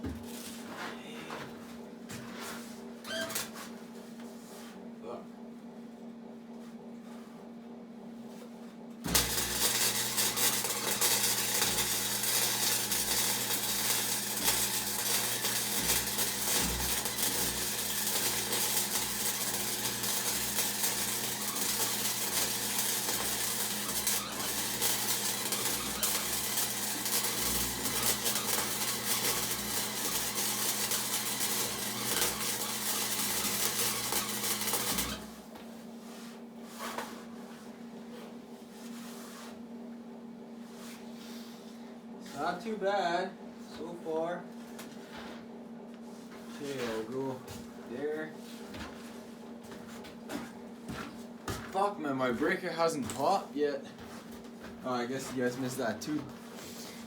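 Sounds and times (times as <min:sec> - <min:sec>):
low electrical hum: 0:00.0 - 0:57.0
welder arc crackling and sizzling: 0:09.0 - 0:35.5, 0:54.9 - 0:56.3.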